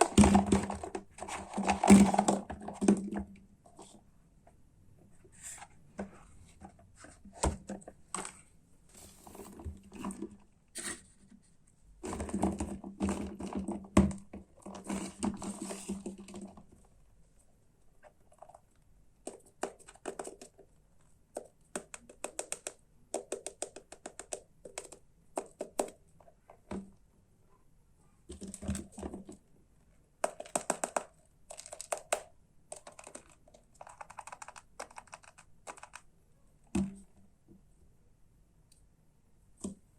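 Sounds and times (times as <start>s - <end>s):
plastic toy pieces clattering: 30.3s - 35.9s.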